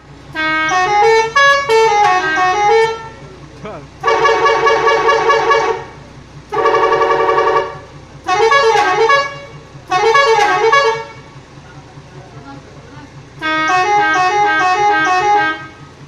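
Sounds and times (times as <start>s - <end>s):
low steady throb: 0.0s - 16.0s
musical air horn: 0.3s - 3.2s, 4.0s - 11.3s, 13.4s - 16.0s.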